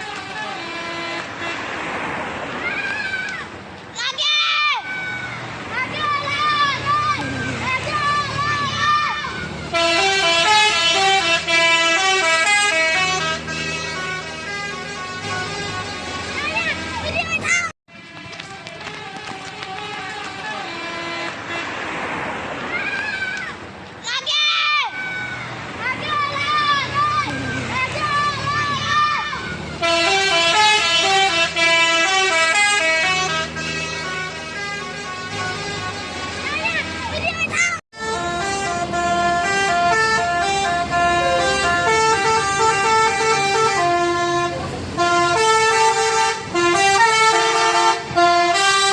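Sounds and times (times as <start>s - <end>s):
bus horn playing a tune: 0.0s - 2.0s, 6.4s - 17.5s, 19.0s - 22.1s, 26.2s - 48.9s
low engine hum: 4.9s - 24.0s, 25.0s - 48.9s.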